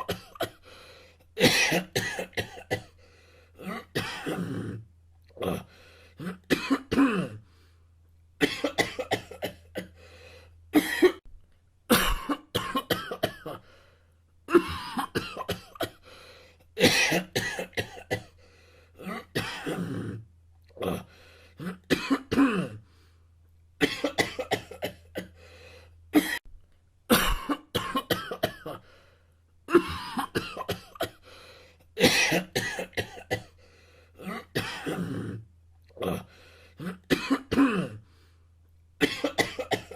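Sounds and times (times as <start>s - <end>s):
person coughing: 0.0s - 0.6s, 1.4s - 3.0s, 3.6s - 4.8s, 5.4s - 7.4s, 8.4s - 10.0s, 10.8s - 11.2s, 11.9s - 13.7s, 14.5s - 16.0s, 16.8s - 18.4s, 19.0s - 20.2s, 20.8s - 22.8s, 23.8s - 25.4s, 26.2s - 26.5s, 27.1s - 28.8s, 29.7s - 31.2s, 32.0s - 33.6s, 34.2s - 38.0s, 39.0s - 39.9s.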